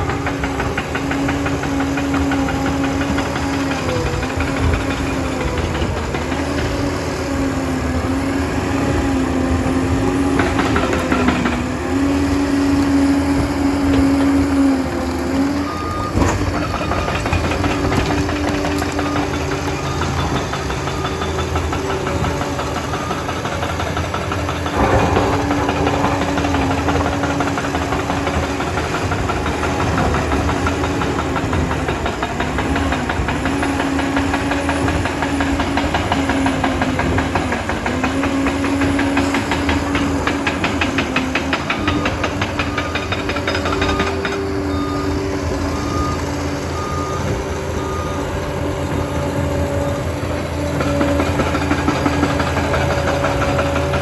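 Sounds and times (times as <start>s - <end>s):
diesel engine under load: 0.0s - 54.0s
sharp knock: 24.7s - 27.5s.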